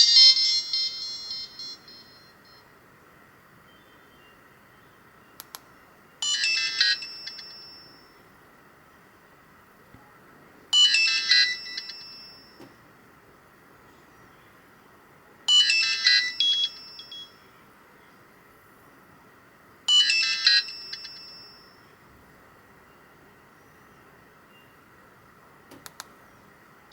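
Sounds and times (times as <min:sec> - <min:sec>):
phone ringtone: 0:00.0 - 0:02.6, 0:06.2 - 0:08.3, 0:10.7 - 0:12.6, 0:15.5 - 0:17.5, 0:19.9 - 0:22.0.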